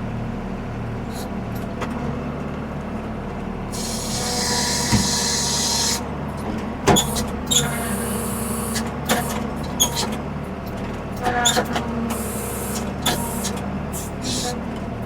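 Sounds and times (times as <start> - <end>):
diesel engine running: 0.0 - 15.0
hiss: 3.8 - 6.0.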